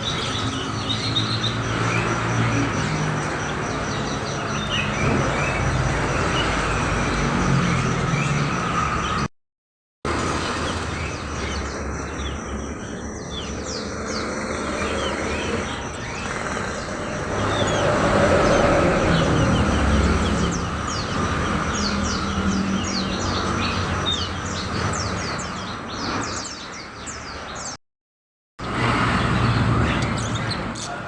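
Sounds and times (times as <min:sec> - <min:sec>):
songbirds chirping: 0:00.0 - 0:09.3, 0:10.1 - 0:27.8, 0:28.6 - 0:31.0.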